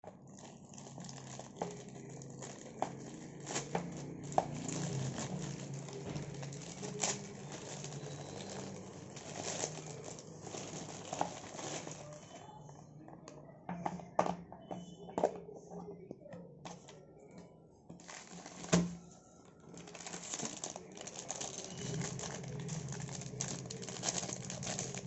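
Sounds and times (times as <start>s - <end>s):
plastic packaging crinkling: 0.0s - 12.5s, 18.0s - 25.0s.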